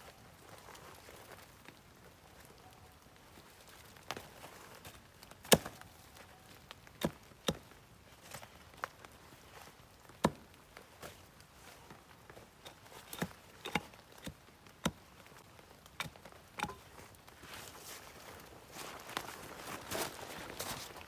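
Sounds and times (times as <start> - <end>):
soft steady crunching: 0.0 - 21.0
sharp knocks and clicks: 16.0 - 16.8.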